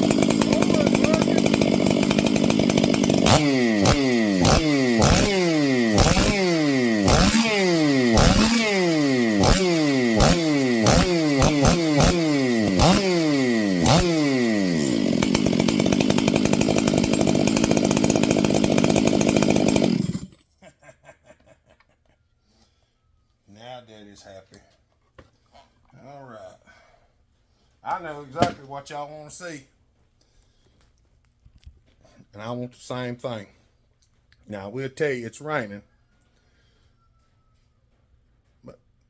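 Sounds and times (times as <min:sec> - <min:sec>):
chainsaw revving: 0:00.0 - 0:20.4.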